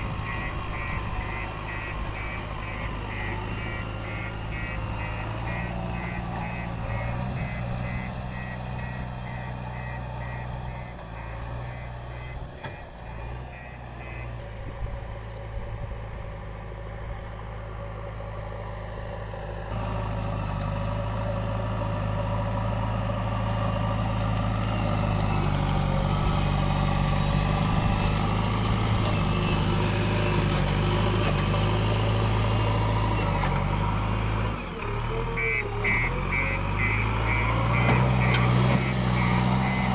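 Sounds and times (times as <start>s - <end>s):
diesel engine running: 0.0s - 39.9s
rapid repeating beep: 0.3s - 12.4s, 35.4s - 39.9s.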